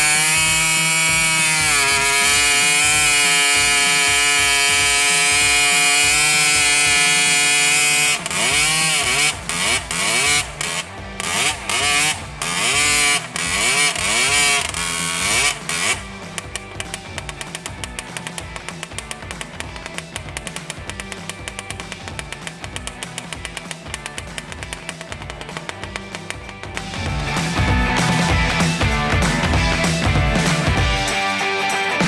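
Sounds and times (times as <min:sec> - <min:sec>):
chainsaw engine revving: 0:00.0 - 0:31.1.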